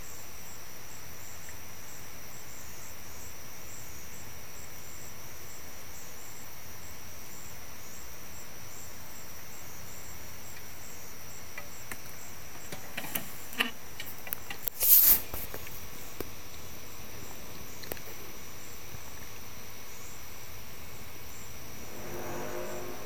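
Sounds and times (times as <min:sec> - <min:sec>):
crickets trilling: 0:00.0 - 0:23.0
short loud noisy burst: 0:21.6 - 0:23.0.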